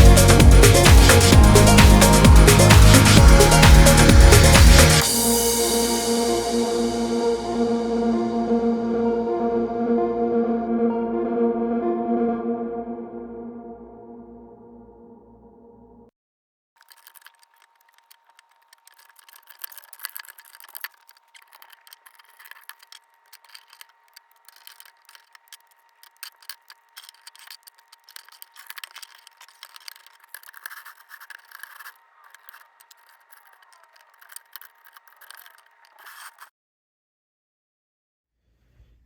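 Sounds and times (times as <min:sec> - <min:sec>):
plastic bricks clicking and rattling: 0:16.8 - 0:36.5.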